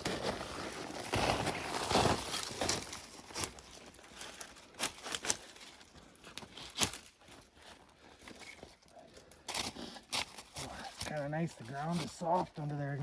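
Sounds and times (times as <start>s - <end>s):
brush rustling: 0.1s - 13.0s
twigs snapping: 2.4s - 5.6s, 6.3s - 7.2s.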